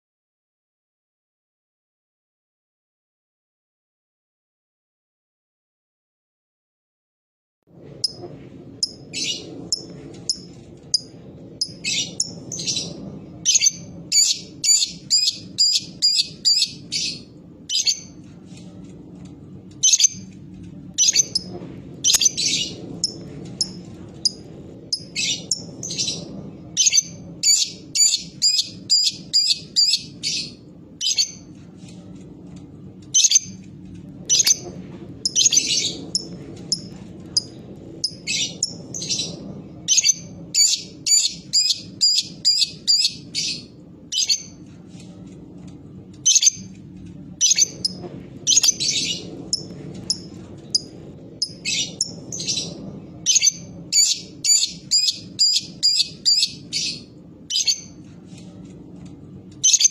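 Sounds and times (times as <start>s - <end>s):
bird shrill chirps: 13.5s - 18.1s, 26.8s - 31.4s, 39.9s - 43.6s.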